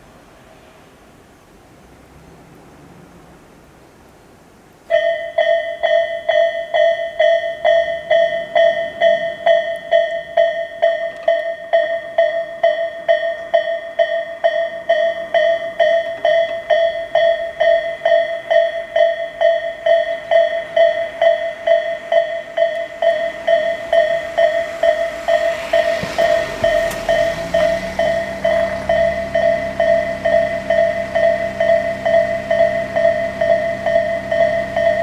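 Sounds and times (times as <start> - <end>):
level crossing warning bell ding: 4.9 - 35.0.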